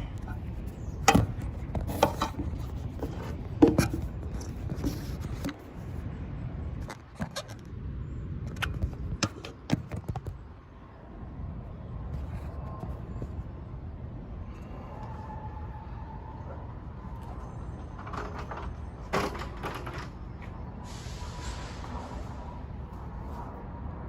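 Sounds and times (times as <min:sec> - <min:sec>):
handling clicks and knocks: 0:01.0 - 0:05.7, 0:08.5 - 0:10.4, 0:17.8 - 0:20.5.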